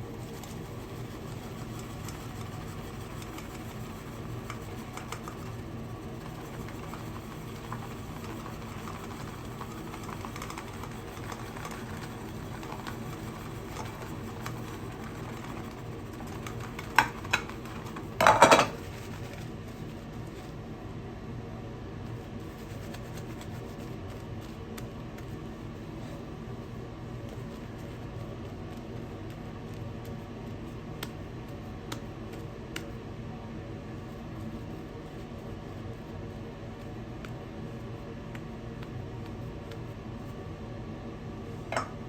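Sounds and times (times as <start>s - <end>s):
shaving brush swishing lather: 0.0s - 17.0s.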